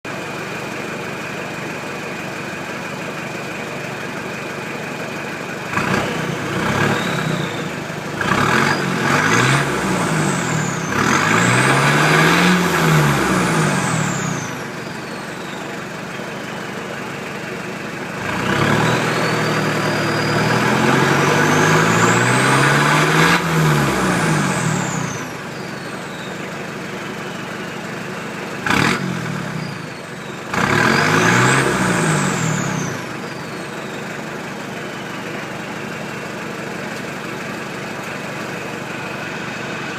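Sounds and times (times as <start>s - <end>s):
diesel engine revving: 4.7s - 39.9s
turbocharger whistle: 5.7s - 16.8s, 18.2s - 26.5s, 28.6s - 35.3s.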